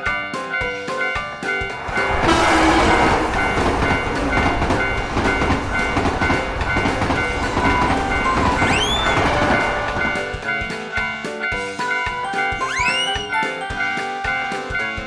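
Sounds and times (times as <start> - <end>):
crossing bell ringing: 0.4 - 15.0
train rumble and wheel clatter: 0.7 - 10.8
train whistle: 1.9 - 10.4.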